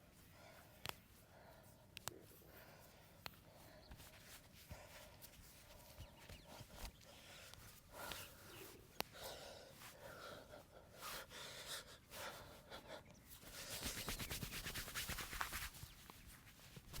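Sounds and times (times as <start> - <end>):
hands rubbing skin: 13.4 - 17.0.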